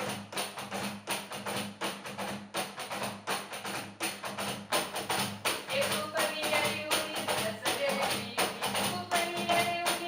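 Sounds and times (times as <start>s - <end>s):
person singing: 5.7s - 10.0s.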